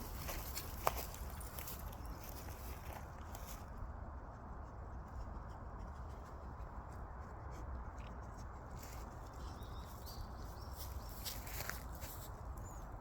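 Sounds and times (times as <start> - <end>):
faint footsteps and scuffling: 0.0 - 3.8, 8.1 - 12.8.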